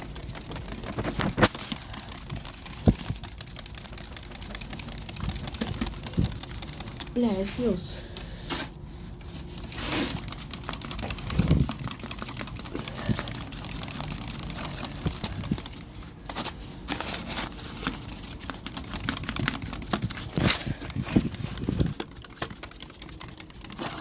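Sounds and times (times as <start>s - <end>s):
cardboard fire crackling: 0.0s - 7.8s.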